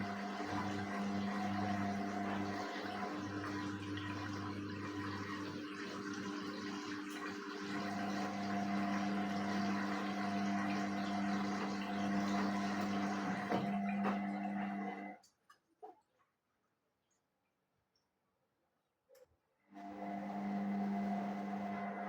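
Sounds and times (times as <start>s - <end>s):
water rushing in washing machine: 0.0s - 15.2s, 19.8s - 22.0s.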